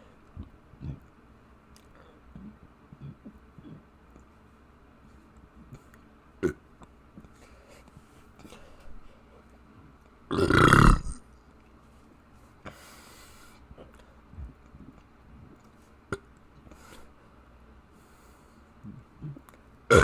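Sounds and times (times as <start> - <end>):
person burping: 10.3 - 11.2, 18.9 - 20.0.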